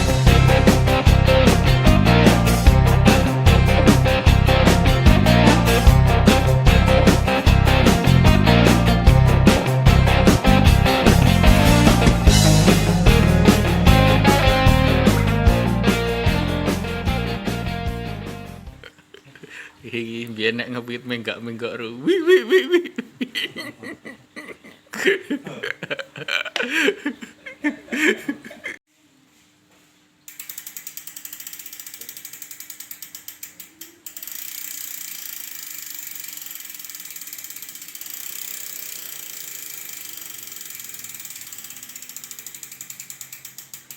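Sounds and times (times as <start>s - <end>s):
bicycle freewheel clicking: 30.3s - 43.9s.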